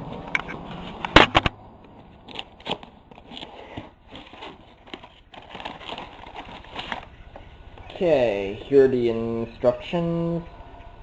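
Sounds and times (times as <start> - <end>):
packaging crinkling and rustling: 2.0 - 8.6.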